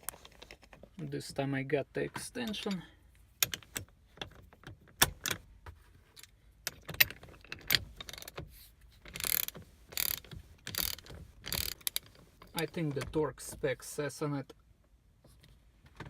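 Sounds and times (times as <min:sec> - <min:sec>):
ratchet clicking: 0:09.1 - 0:12.1.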